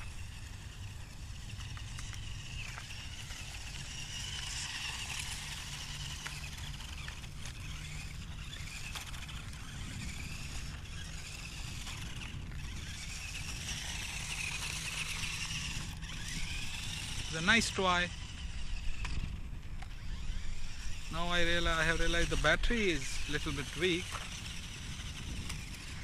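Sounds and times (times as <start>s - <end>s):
small electric motor whining: 0.0s - 26.0s
wind on microphone: 0.0s - 26.0s
small clicks: 1.4s - 9.6s.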